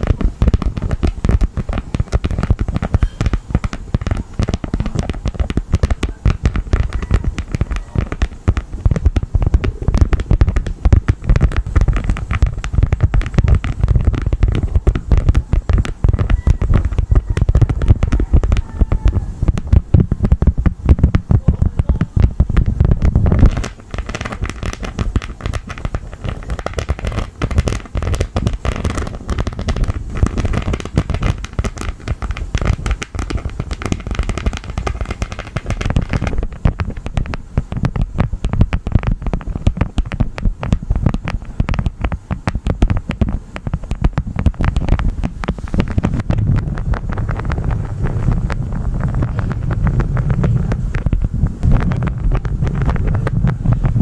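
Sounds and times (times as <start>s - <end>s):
heavy low rumble: 0.0s - 27.4s, 40.4s - 54.0s.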